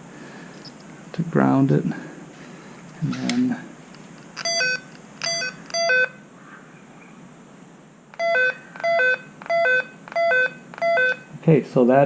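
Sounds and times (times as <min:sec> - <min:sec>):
circuit tester beeping: 0:04.4 - 0:06.2, 0:08.1 - 0:11.3.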